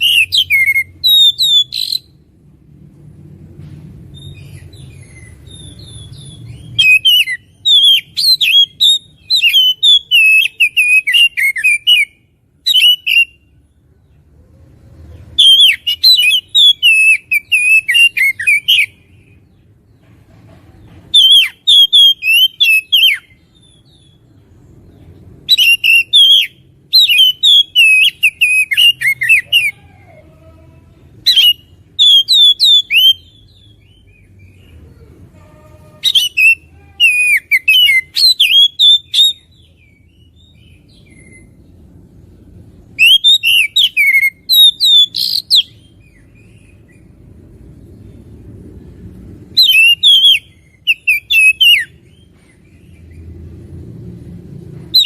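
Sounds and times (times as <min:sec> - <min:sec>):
bird singing whistles and chirps: 0:00.0 - 0:02.1, 0:04.1 - 0:13.5, 0:15.4 - 0:19.3, 0:21.1 - 0:24.2, 0:25.4 - 0:29.8, 0:31.2 - 0:34.7, 0:36.0 - 0:41.7, 0:43.0 - 0:47.2, 0:49.5 - 0:53.2.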